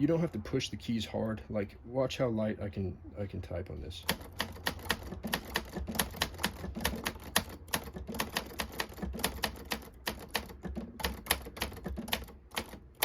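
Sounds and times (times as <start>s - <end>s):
manual typewriter key strikes: 4.1s - 13.0s.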